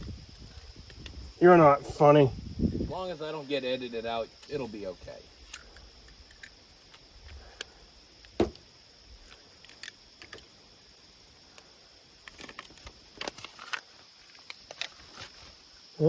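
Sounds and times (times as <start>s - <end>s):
small clicks and crinkles: 5.4s - 8.4s, 9.2s - 10.5s, 11.5s - 15.7s
sharp knock: 8.4s - 8.6s.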